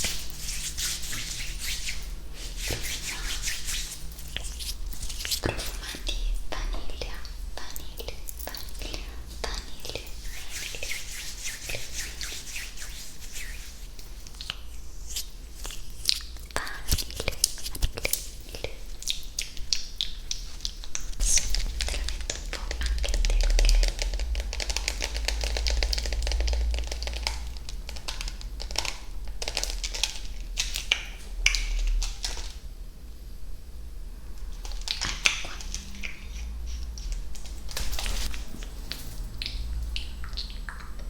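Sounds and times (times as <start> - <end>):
scratching rustle: 9.7 - 14.4, 37.3 - 39.4.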